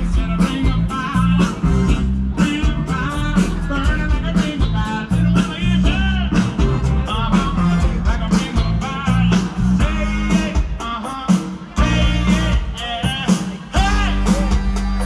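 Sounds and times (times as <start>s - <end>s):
rock music with singing: 0.0s - 15.0s.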